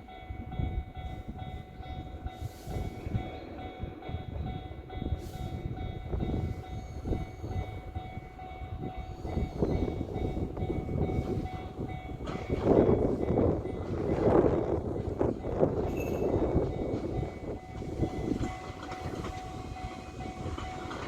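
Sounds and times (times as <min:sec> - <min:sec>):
train rumbling with wheel knocks: 0:00.0 - 0:21.0
level crossing bell ringing: 0:15.9 - 0:21.0.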